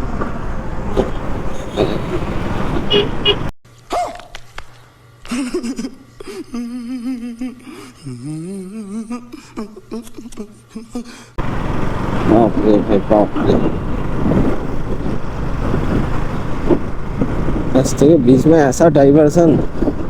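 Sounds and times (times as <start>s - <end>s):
quieter traffic: 0.0s - 3.6s, 11.4s - 20.0s
wind and road noise: 0.0s - 3.6s, 11.4s - 20.0s
short horn beeps: 2.8s - 3.5s.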